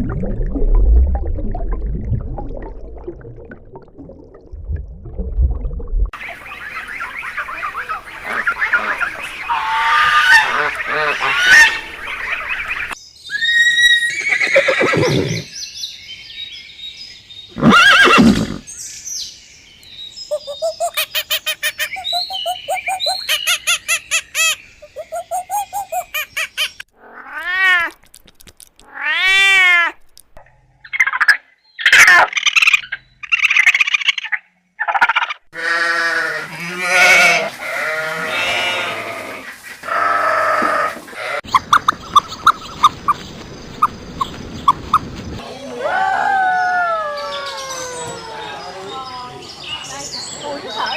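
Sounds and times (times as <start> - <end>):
animal calls: 43.8 - 49.1.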